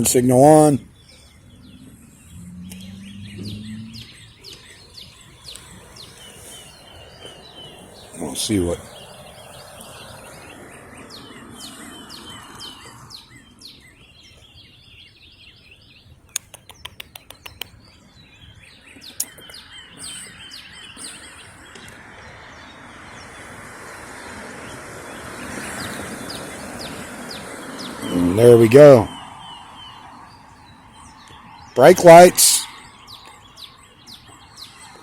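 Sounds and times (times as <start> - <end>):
outdoor background noise: 0.0 - 35.0
small birds chirping: 0.0 - 35.0
sharp clicks: 16.3 - 17.8.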